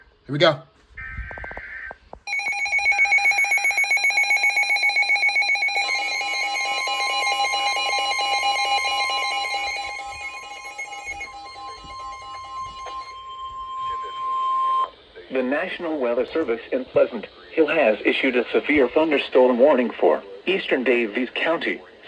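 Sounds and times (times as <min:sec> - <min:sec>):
pulsing electronic alarm: 0:01.3 - 0:14.9
steady warning tone: 0:01.3 - 0:15.4.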